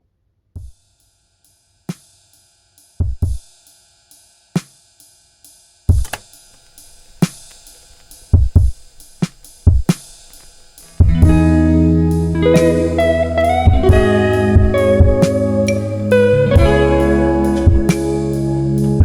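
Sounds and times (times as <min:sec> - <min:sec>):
drum machine beat: 0:03.0 - 0:03.6, 0:05.9 - 0:19.0
faint sustained tone: 0:10.2 - 0:18.8.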